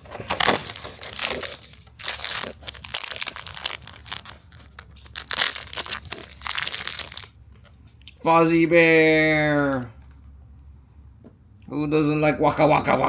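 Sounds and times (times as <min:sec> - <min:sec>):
packaging crinkling: 0:00.0 - 0:08.2.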